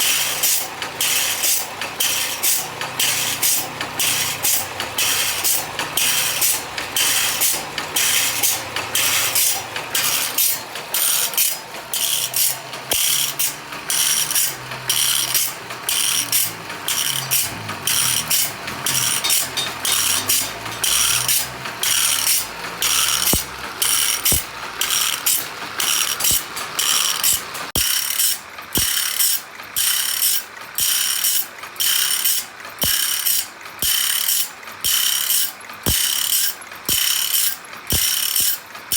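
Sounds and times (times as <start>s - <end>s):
grinder rasping on saw teeth: 0.0s - 38.6s
low motor hum: 12.8s - 27.1s.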